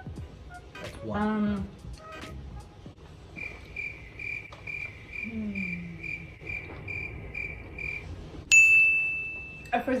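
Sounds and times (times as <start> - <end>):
cricket chirping: 3.3 - 8.1.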